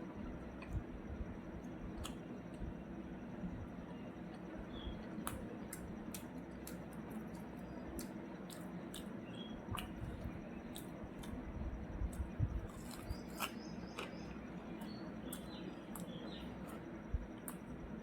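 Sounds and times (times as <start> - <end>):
person chewing: 5.1 - 11.4, 12.1 - 17.7.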